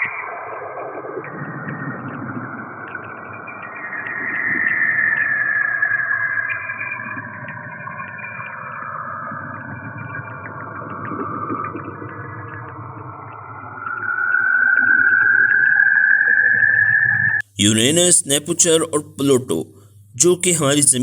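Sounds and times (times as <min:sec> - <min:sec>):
eerie whooshing electronic noise: 0:00.0 - 0:17.4.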